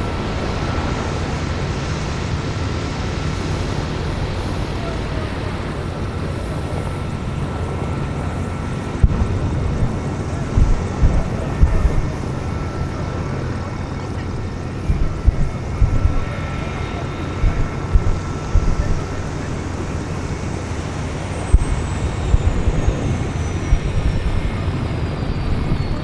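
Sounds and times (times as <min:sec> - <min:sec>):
helicopter rotor rumble: 0:00.0 - 0:26.0
low thumps: 0:09.0 - 0:12.4, 0:14.8 - 0:16.6, 0:17.2 - 0:20.5, 0:21.5 - 0:24.7.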